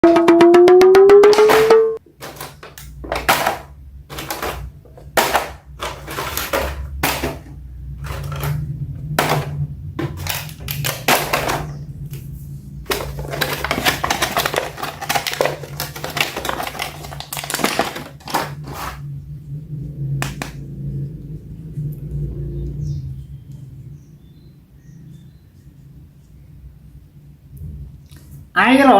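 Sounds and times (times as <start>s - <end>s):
rising electronic tone: 0.0s - 2.0s
plastic toys clicking and tapping: 1.3s - 12.2s, 12.8s - 19.0s
packaging rustling: 2.1s - 19.0s
low hum: 18.5s - 28.0s.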